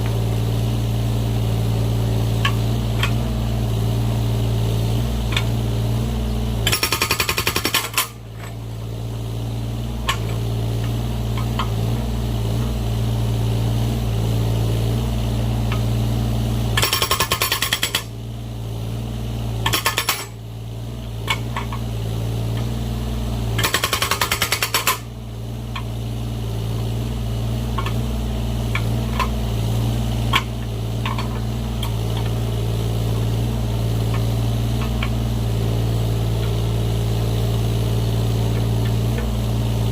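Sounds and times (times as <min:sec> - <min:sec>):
excavator engine running: 0:00.0 - 0:39.9
hydraulic breaker hammering: 0:06.6 - 0:08.7, 0:16.8 - 0:18.1, 0:19.6 - 0:20.4, 0:23.5 - 0:25.1.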